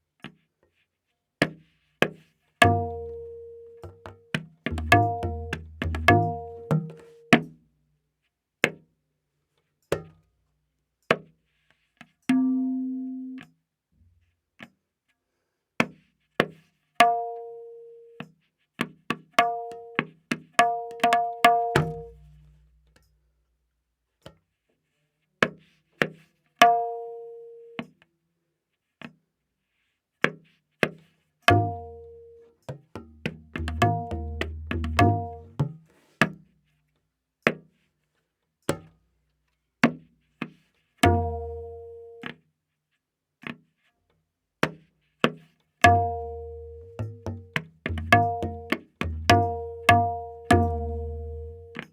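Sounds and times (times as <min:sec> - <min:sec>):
tabla strokes: 0:01.4 - 0:07.6, 0:11.0 - 0:13.5, 0:18.2 - 0:23.1, 0:29.7 - 0:36.6, 0:39.8 - 0:42.4, 0:44.6 - 0:51.9.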